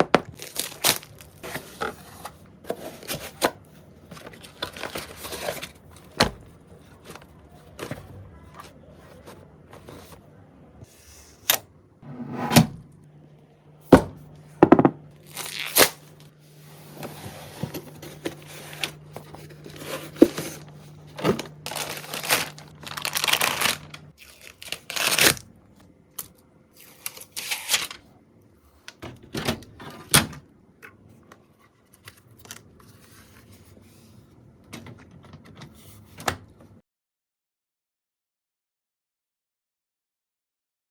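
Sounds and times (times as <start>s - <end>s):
low steady hum: 0.0s - 35.4s
plastic rustling and tearing: 0.3s - 3.4s, 15.2s - 25.5s, 26.2s - 28.1s.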